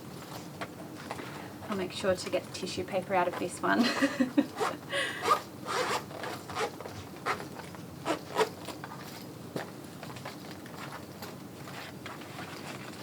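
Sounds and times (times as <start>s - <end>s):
boot zipper rasping: 4.5s - 8.6s.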